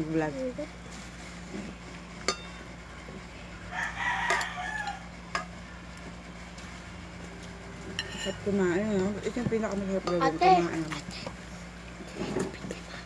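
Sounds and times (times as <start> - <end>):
rooster crowing: 3.7 - 5.2.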